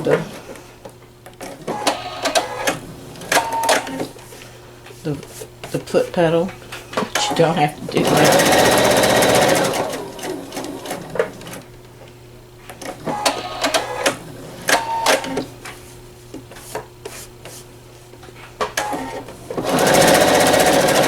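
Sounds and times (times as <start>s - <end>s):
faint steady hum: 0.0s - 20.2s
sewing machine stitching: 7.9s - 11.6s, 13.0s - 15.4s, 18.8s - 21.0s
sewing machine clicks: 19.6s - 21.0s.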